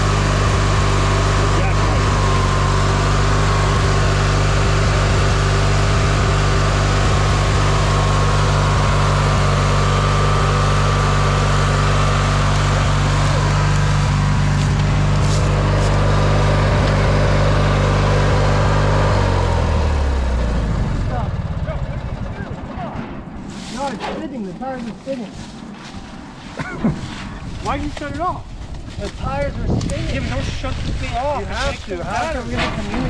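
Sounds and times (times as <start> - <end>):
engine winding down: 0.0 - 23.4
vehicle engine running: 0.0 - 33.0.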